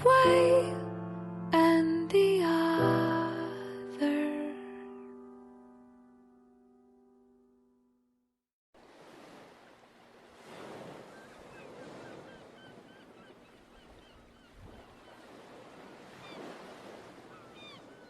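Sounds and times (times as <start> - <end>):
music: 0.0 - 8.3
surf washing in: 8.8 - 18.0
birds calling and honking: 11.1 - 15.4, 16.1 - 18.0.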